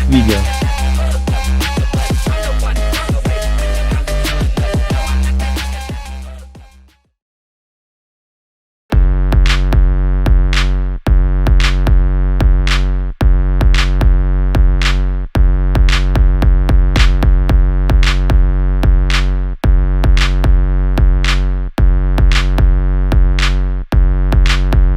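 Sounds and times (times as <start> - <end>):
electronic music: 0.0 - 6.5.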